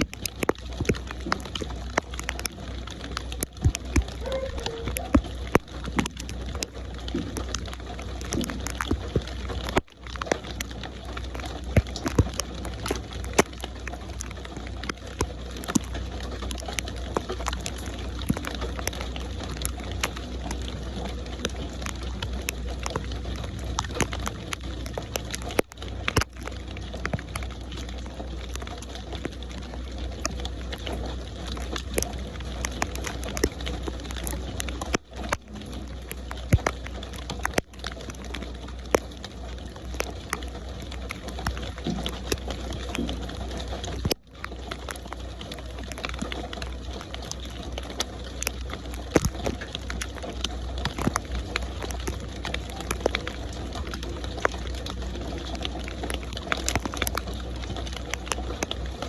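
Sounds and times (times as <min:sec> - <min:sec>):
rain hissing: 0:00.0 - 0:59.0
raindrop ticks: 0:00.0 - 0:59.0.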